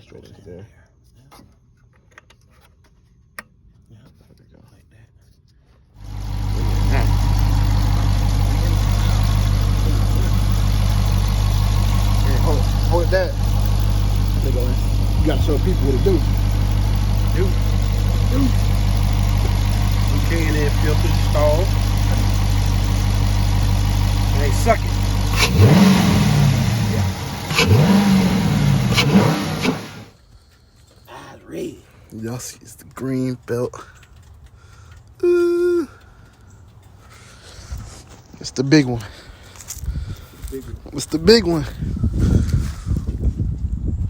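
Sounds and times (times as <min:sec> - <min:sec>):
car engine idling: 0:06.0 - 0:30.1.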